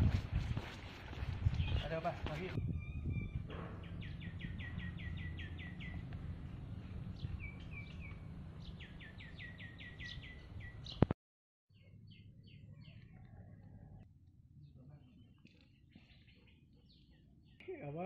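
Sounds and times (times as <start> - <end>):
bird chirping: 2.6 - 11.1, 11.7 - 14.0, 14.6 - 18.0.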